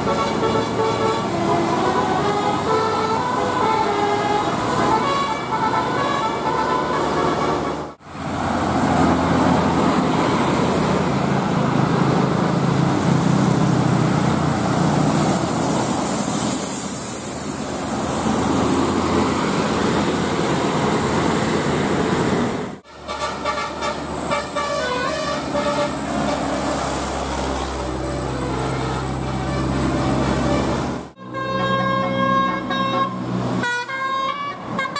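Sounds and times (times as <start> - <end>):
musical air horn melody: 0.0 - 8.0, 22.8 - 26.4, 30.4 - 34.9
bus road noise: 0.0 - 34.9.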